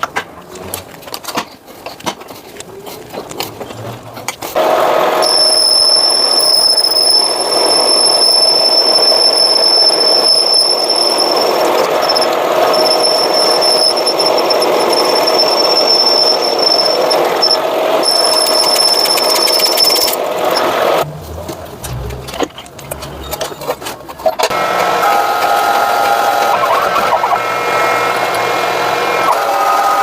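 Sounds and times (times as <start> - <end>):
power tool whining and grinding: 4.6 - 21.0, 24.5 - 30.0.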